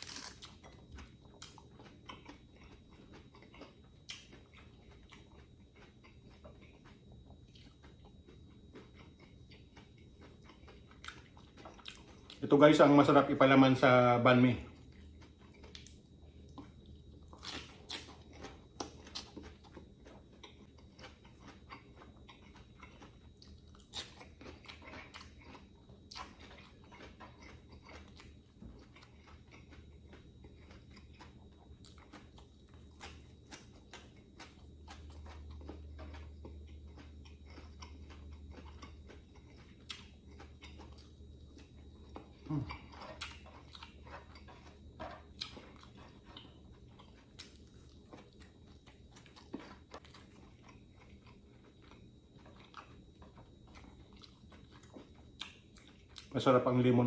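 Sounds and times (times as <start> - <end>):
crisp crunches: 0.0 - 0.7
person chewing and biting: 0.0 - 56.4.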